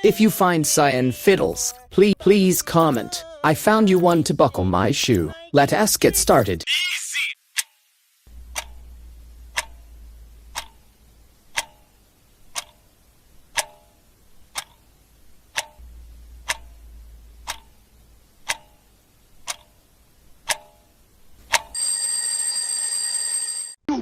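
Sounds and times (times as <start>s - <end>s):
clock ticking: 8.3s - 21.8s
loud alarm ringing: 21.7s - 23.8s.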